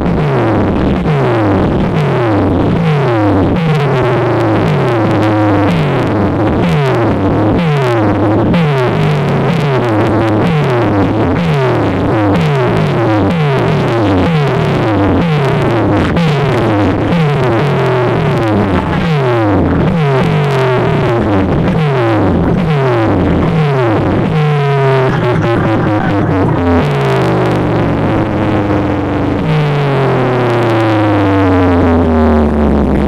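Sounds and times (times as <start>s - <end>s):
loud electronic dance music: 9.7s - 32.2s.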